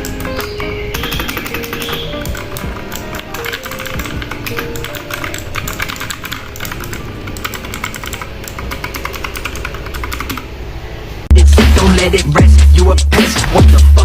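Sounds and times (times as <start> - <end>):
background music: 0.0 - 9.7, 11.3 - 14.0
keyboard key clicks: 0.0 - 10.5.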